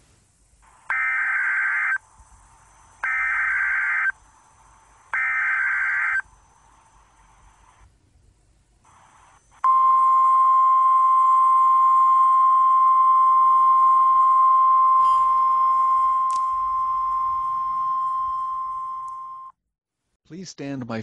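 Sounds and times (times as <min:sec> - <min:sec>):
steady high warning alarm tone: 0:00.8 - 0:07.5.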